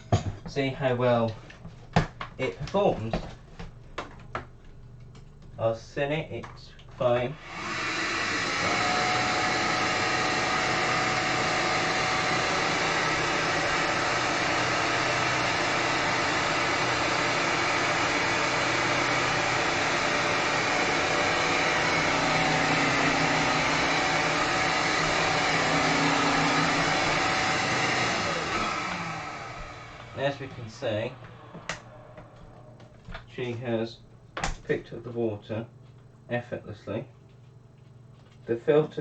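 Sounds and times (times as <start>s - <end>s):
wet floor cleaner motor hum: 7.4s - 33.2s.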